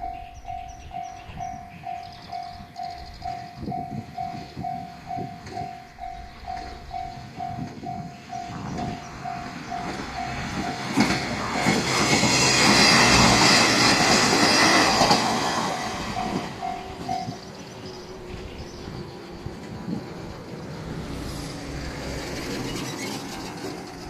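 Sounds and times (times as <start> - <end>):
level crossing bell ringing: 0.0 - 11.0, 16.1 - 17.4
diesel train engine: 0.0 - 24.0
train wheels on rails: 0.0 - 24.0.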